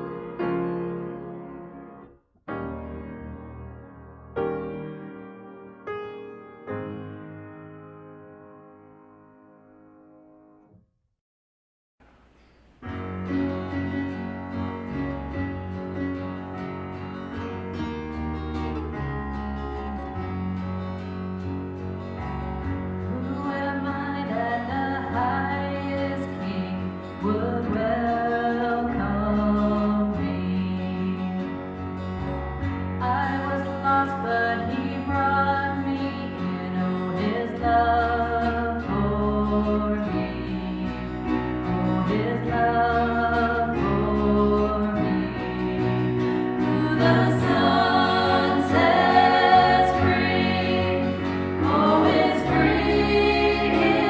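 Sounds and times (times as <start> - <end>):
strummed acoustic guitar: 12.0 - 54.0
person singing: 23.1 - 31.5, 33.0 - 54.0.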